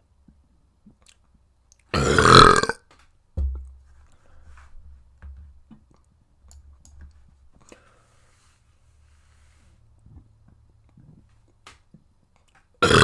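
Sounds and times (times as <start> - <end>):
clicking mouth sounds: 0.8 - 2.8
person burping: 1.9 - 2.8
dull low thump: 3.4 - 3.9.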